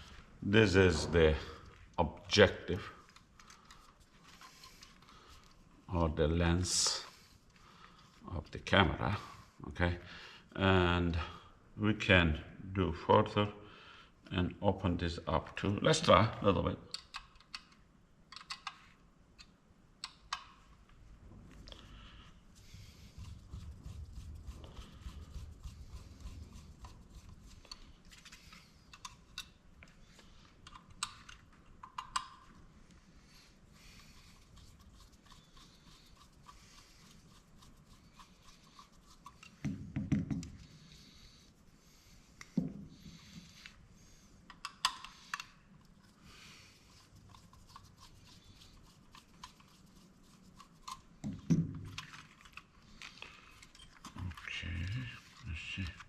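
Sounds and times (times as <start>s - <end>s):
small tools clicking and scraping: 23.1s - 32.6s, 34.0s - 39.6s, 46.8s - 56.0s.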